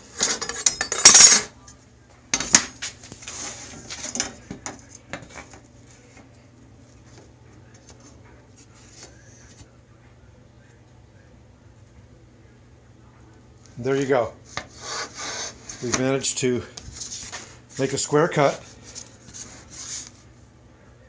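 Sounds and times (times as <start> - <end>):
metal tools clinking and scraping: 0.0 - 1.5, 3.2 - 5.6.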